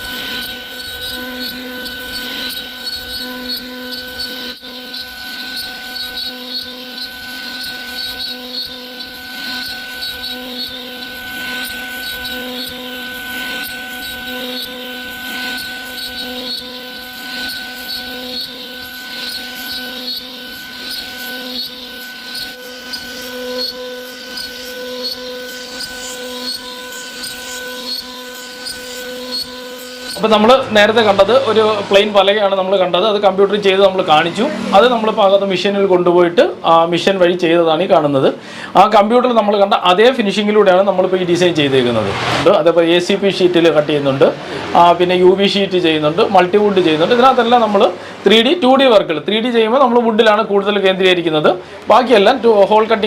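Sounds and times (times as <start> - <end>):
bit rasping through wood: 0.0 - 36.2
router spindle whine: 0.0 - 53.0.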